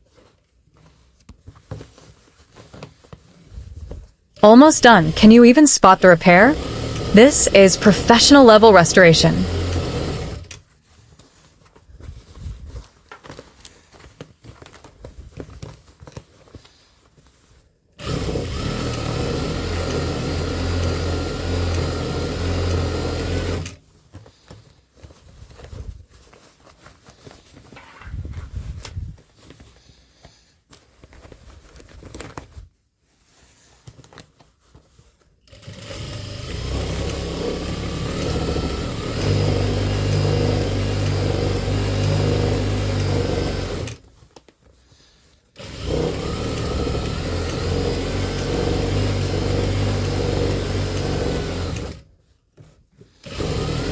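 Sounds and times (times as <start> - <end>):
electric sewing machine running: 6.6 - 7.1, 9.4 - 10.5, 18.0 - 23.7, 35.5 - 44.0, 45.6 - 52.0, 53.2 - 53.9.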